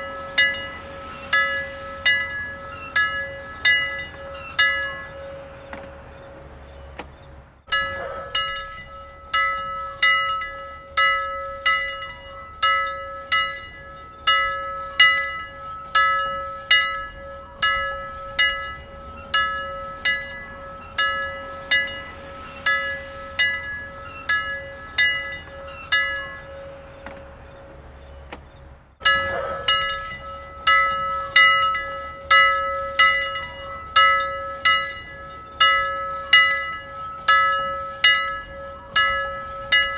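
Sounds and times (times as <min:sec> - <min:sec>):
church bell ringing: 0:00.0 - 0:07.1, 0:07.7 - 0:28.3, 0:29.0 - 0:39.9.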